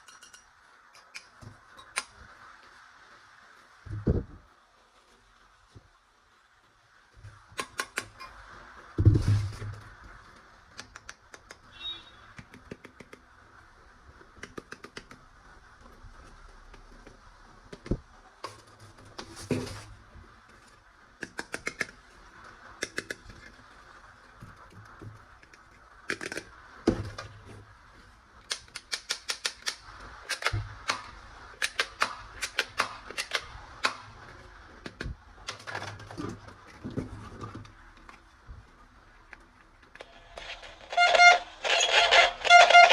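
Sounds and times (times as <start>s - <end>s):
plastic toy guns clicking: 28.5s - 34.0s.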